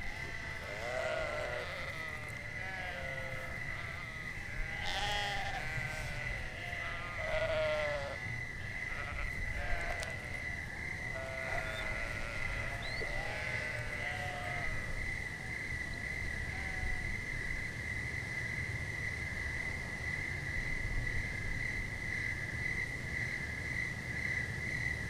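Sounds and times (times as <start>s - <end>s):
insects chirring: 0.0s - 24.8s.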